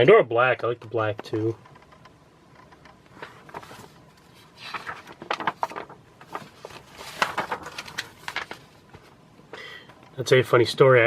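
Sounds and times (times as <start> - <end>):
catalog pages turning: 3.1 - 9.2.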